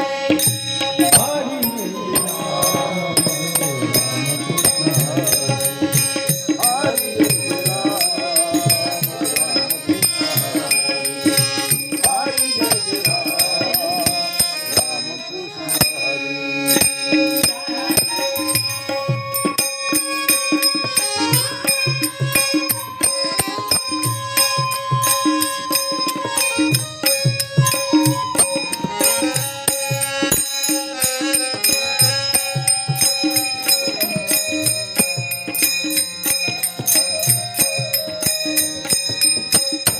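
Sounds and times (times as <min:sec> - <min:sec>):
hand cymbals: 0:00.0 - 0:39.9
long held melodic notes: 0:00.0 - 0:39.9
person singing: 0:00.8 - 0:19.8, 0:31.6 - 0:39.6.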